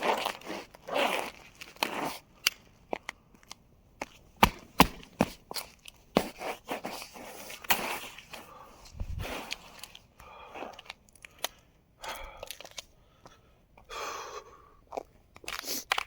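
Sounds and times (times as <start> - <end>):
footsteps crunching on icy sleet: 0.0 - 3.0.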